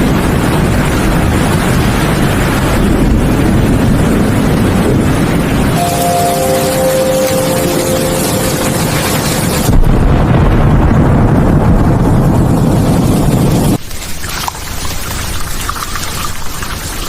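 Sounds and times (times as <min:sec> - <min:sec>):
heavy rain hissing: 0:00.1 - 0:10.4
loud deep rumble: 0:09.1 - 0:13.5.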